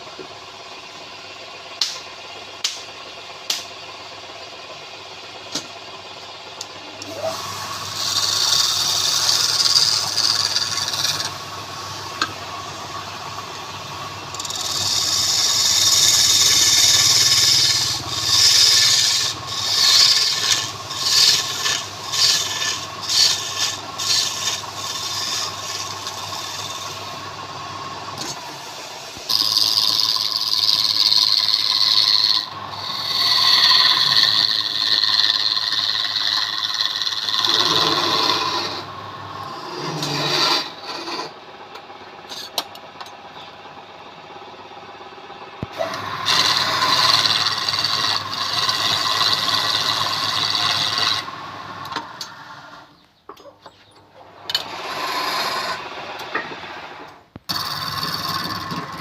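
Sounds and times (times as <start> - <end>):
wood lathe humming: 0.0 - 42.6, 43.2 - 53.1, 54.3 - 59.0
turning tool rasping on wood: 6.9 - 41.4, 45.8 - 52.0, 54.6 - 56.0, 57.5 - 59.0.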